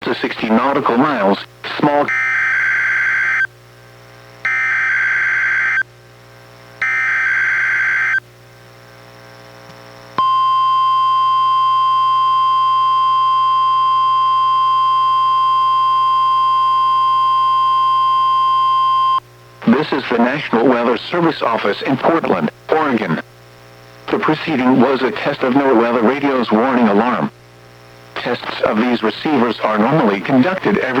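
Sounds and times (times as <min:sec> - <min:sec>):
steady warning alarm tone: 0:01.9 - 0:03.5, 0:04.4 - 0:05.9, 0:06.8 - 0:08.2, 0:10.2 - 0:20.9.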